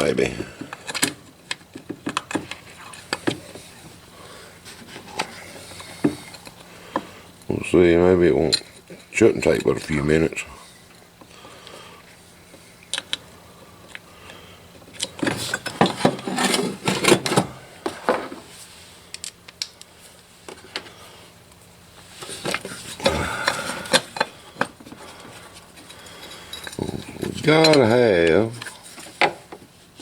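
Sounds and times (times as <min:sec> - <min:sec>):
hand tools and metal parts rattling: 0:14.8 - 0:18.4, 0:22.1 - 0:29.6.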